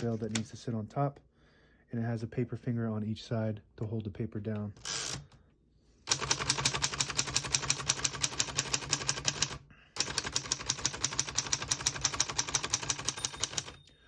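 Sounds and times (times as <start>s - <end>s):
typewriter keystrokes: 6.1s - 13.8s.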